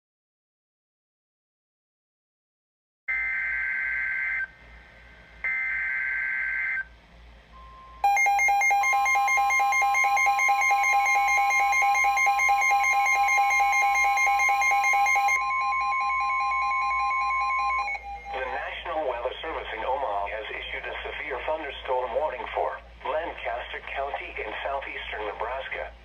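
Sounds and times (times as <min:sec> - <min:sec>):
fast-pulsing buzzy alarm tone: 0:08.0 - 0:18.8
steady alert tone: 0:08.0 - 0:18.8.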